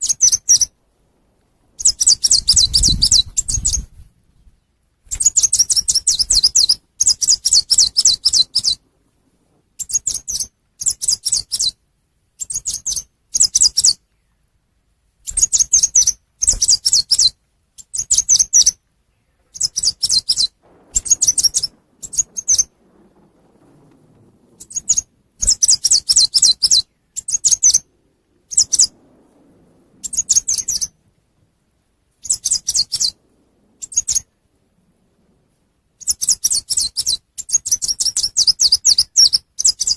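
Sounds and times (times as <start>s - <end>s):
songbird rapid high chirping: 1.8s - 8.8s, 15.3s - 23.8s, 32.2s - 34.3s, 36.0s - 39.9s.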